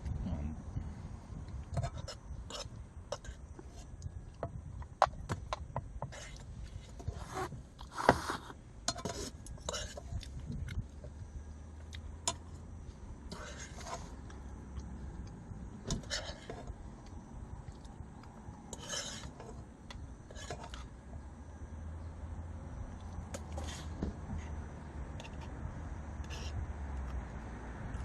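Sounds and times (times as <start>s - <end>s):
low steady hum: 0.0s - 28.0s
utensils scraping dishes: 18.7s - 19.6s.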